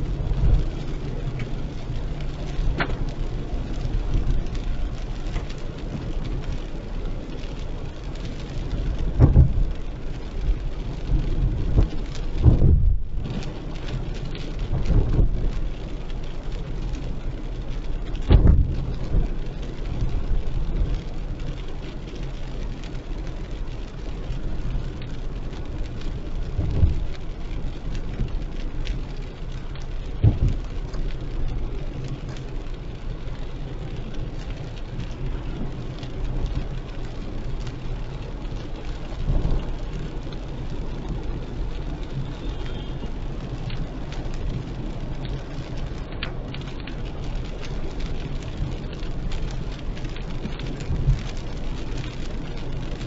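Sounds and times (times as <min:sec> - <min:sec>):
car engine and road noise: 0:00.0 - 0:53.0
heavy rain on car: 0:00.0 - 0:53.0
dull low thumps: 0:09.0 - 0:09.8, 0:11.0 - 0:13.3, 0:18.2 - 0:19.3, 0:30.1 - 0:30.8.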